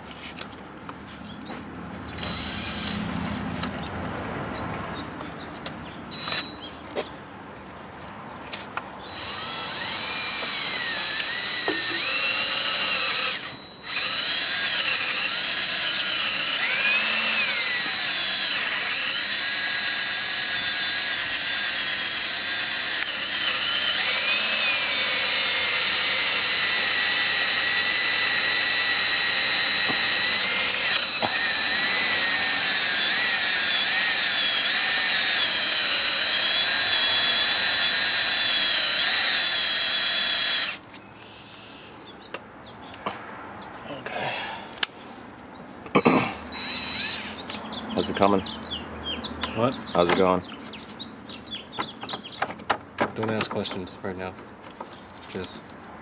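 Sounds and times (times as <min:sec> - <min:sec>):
power drill running: 0:02.2 - 0:03.0, 0:06.1 - 0:06.7, 0:09.0 - 0:40.8, 0:46.5 - 0:47.4.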